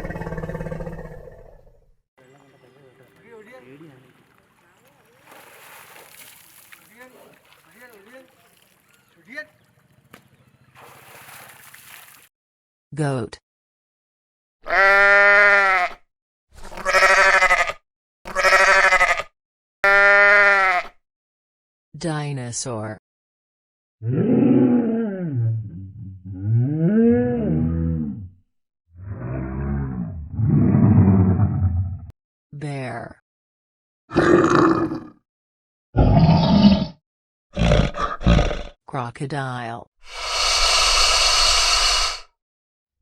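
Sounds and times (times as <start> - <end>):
bear growling: 0.0 - 1.8, 36.0 - 37.0, 37.6 - 38.8, 40.1 - 42.3
goat bleating: 14.7 - 16.0, 16.8 - 19.2, 19.9 - 20.9.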